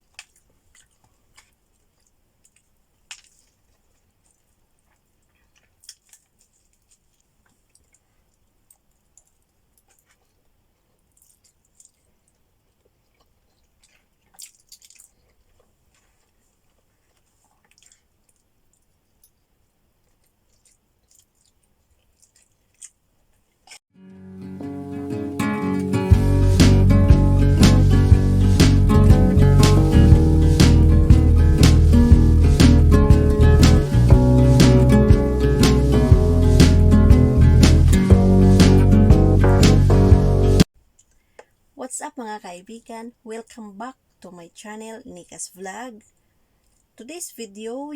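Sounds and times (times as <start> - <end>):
person eating and chewing: 0.0 - 23.8.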